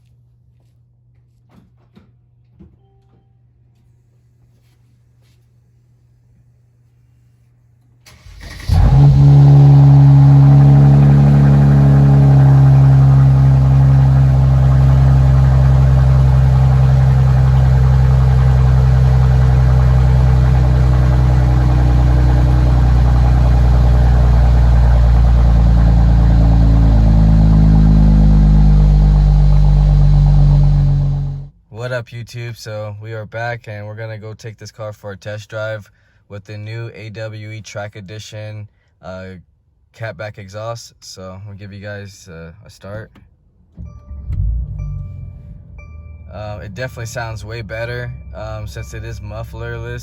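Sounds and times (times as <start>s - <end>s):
car engine cold start and idle: 8.0s - 31.5s, 43.7s - 50.0s.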